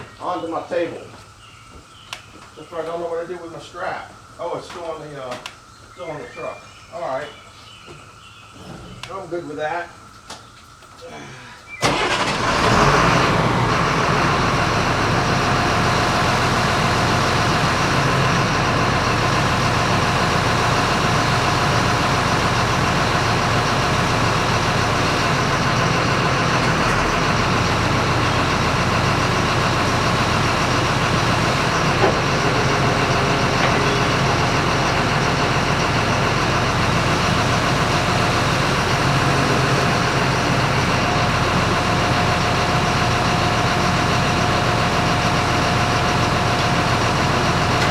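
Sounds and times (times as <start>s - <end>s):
engine idling: 11.8s - 47.9s.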